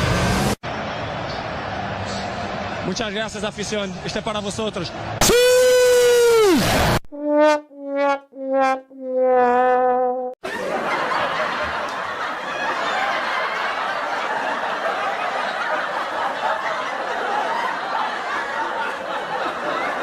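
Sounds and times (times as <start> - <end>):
crowd laughing: 10.4 - 20.0.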